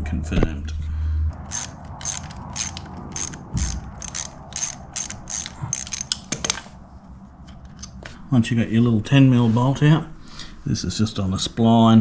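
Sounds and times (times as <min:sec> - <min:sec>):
ratchet wrench clicking: 0:01.4 - 0:06.6.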